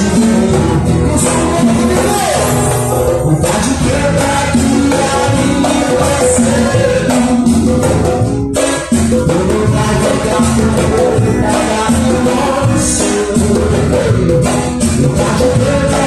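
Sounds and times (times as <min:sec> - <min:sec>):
live band music: 0:00.0 - 0:16.0.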